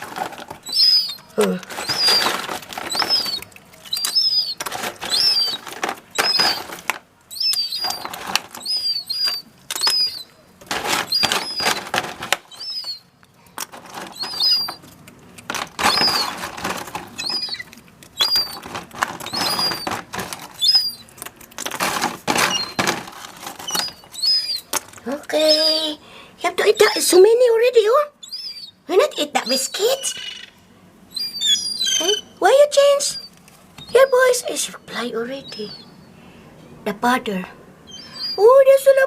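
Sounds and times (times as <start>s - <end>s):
rustling or flapping bursts: 0.0s - 7.0s, 7.7s - 10.0s, 10.6s - 13.0s, 13.7s - 25.5s
young gulls begging calls: 0.0s - 13.1s, 14.0s - 14.8s, 15.8s - 21.2s, 21.9s - 36.2s, 37.8s - 39.0s.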